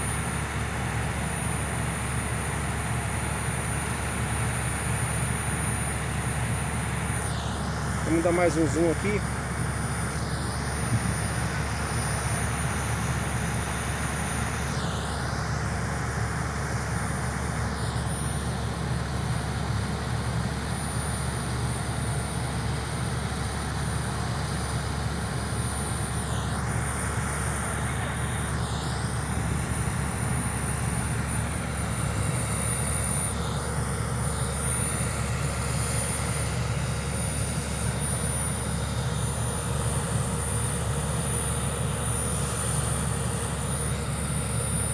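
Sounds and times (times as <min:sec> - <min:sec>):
diesel engine droning: 0:07.3 - 0:12.0.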